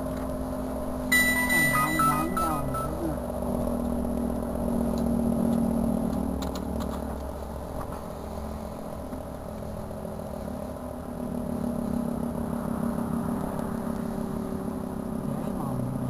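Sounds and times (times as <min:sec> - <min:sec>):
warning siren two-tone chord: 0:01.1 - 0:03.3.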